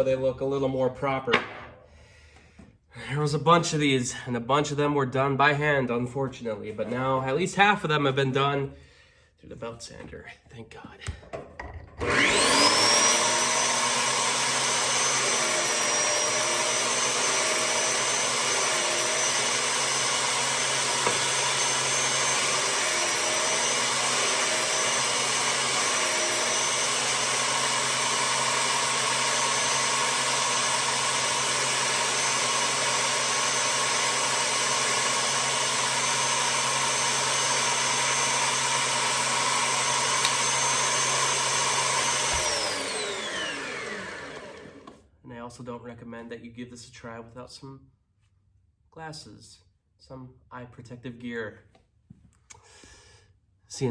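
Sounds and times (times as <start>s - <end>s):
belt sander motor whine: 12.0s - 45.0s.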